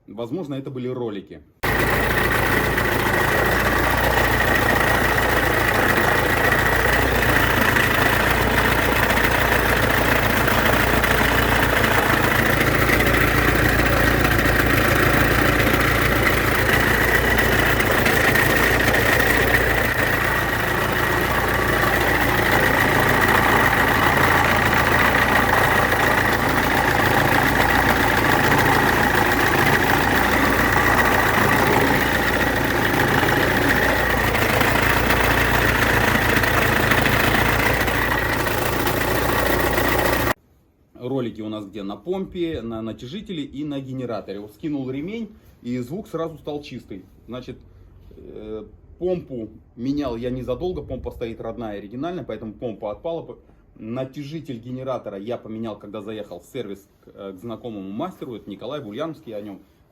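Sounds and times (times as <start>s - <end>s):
diesel engine idling: 1.6s - 40.4s.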